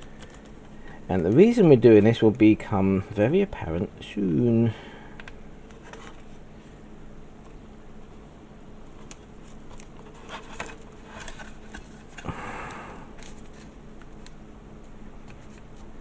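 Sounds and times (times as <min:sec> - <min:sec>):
masking tape clicks and rustles: 0:00.0 - 0:01.7, 0:08.8 - 0:16.0.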